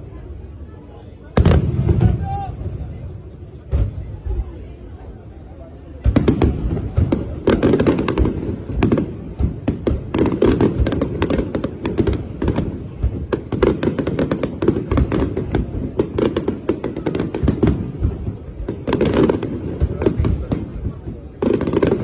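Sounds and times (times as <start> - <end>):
fireworks bursting: 0.0 - 22.0.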